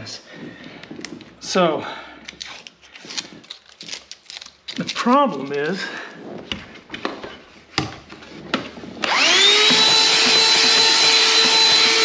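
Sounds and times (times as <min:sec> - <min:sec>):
small electric motor whining: 0:09.0 - 0:12.0.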